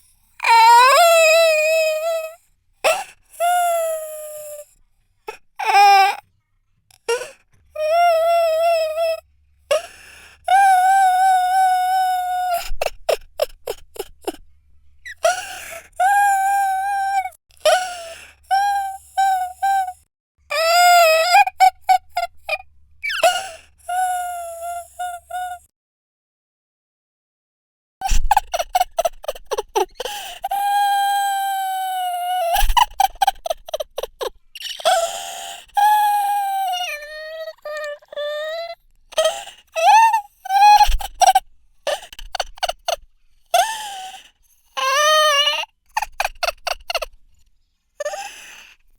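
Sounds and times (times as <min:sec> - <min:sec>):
person sobbing and wailing: 0:00.4 - 0:04.6, 0:10.5 - 0:14.4, 0:15.1 - 0:25.6, 0:28.0 - 0:43.0, 0:43.6 - 0:47.1.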